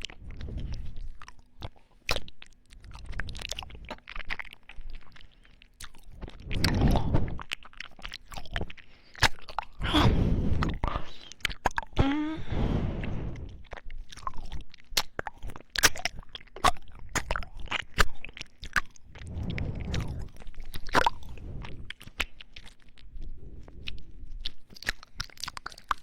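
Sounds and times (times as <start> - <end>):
wet mouth clicks: 0.0 - 9.8, 13.0 - 26.0.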